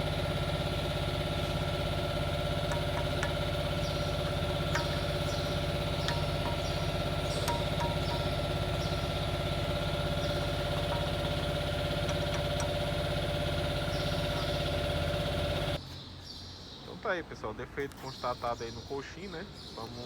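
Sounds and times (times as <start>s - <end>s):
motor pulsing hum: 0.0s - 15.8s.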